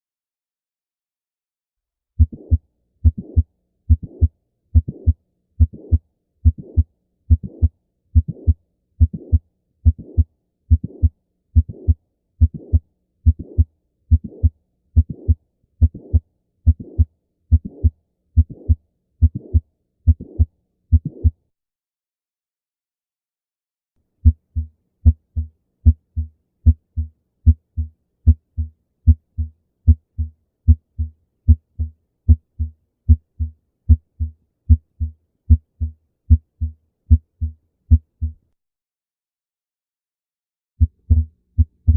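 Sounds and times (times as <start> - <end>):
heartbeat through stethoscope: 2.2 - 21.4, 24.2 - 38.4, 40.8 - 41.9.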